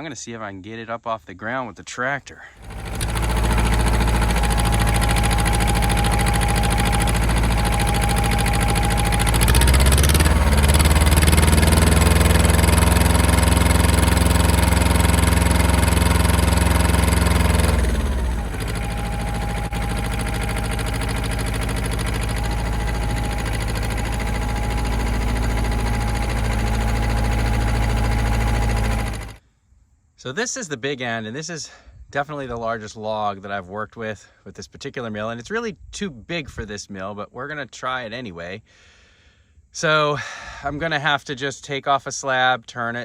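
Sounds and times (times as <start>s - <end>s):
tractor diesel engine revving: 2.6s - 29.4s.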